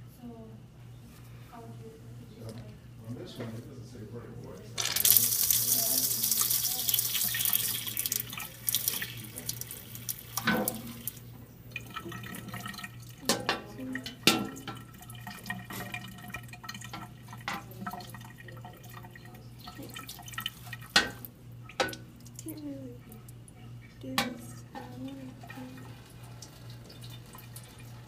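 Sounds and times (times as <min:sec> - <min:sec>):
tap water running onto baking sheet: 0:04.5 - 0:28.0
water dripping: 0:04.8 - 0:28.0.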